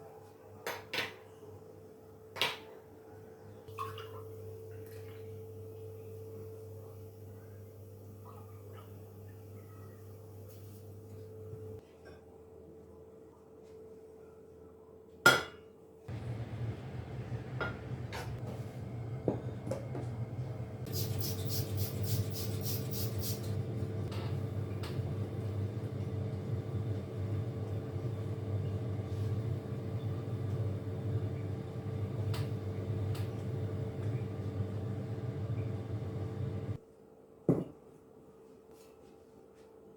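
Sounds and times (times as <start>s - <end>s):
kitchen appliance humming: 16.1s - 36.8s.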